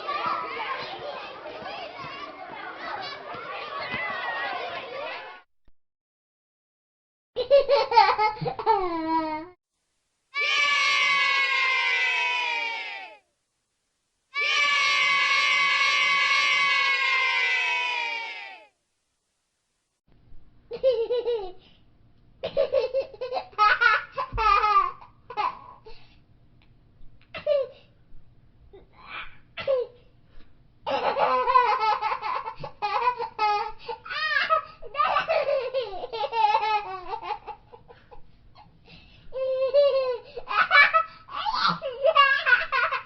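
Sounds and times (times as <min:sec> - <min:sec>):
young children laughing and squealing: 0:00.0 - 0:05.4, 0:10.4 - 0:13.2, 0:14.4 - 0:18.7, 0:30.9 - 0:38.7, 0:39.4 - 0:43.0
young child laughing: 0:07.4 - 0:09.6, 0:20.7 - 0:21.6, 0:22.4 - 0:25.8, 0:30.9 - 0:38.7, 0:39.4 - 0:43.0.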